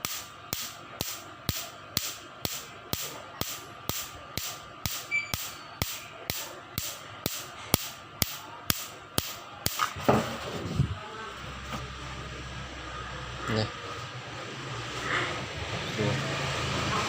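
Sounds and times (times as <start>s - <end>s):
laser machine pulse snaps: 0.0s - 9.8s.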